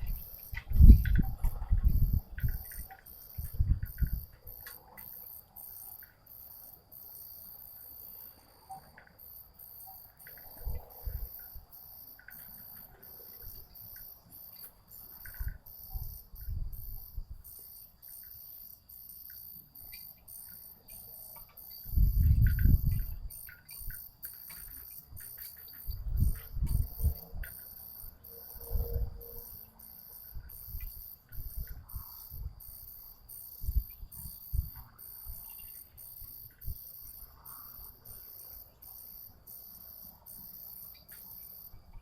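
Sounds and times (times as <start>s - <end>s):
wind buffeting microphone: 0.0s - 4.6s, 10.5s - 11.6s, 15.2s - 17.5s, 21.7s - 24.0s, 25.0s - 27.6s, 28.6s - 29.4s, 30.3s - 37.3s
faint ticks: 0.0s - 6.7s, 8.6s - 42.0s
crickets chirping: 0.0s - 42.0s.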